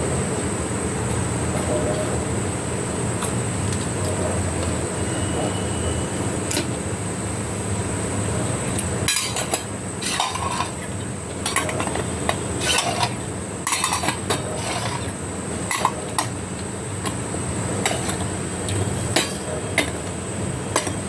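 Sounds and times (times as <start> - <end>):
steady low hum: 0.0 - 21.0
utensil scraping a pan: 9.2 - 10.8, 11.4 - 15.1.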